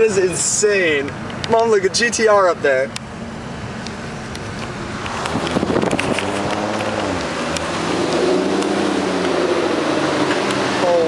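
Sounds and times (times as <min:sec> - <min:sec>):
car engine running: 0:03.0 - 0:11.0
wind noise on microphone: 0:05.0 - 0:08.8.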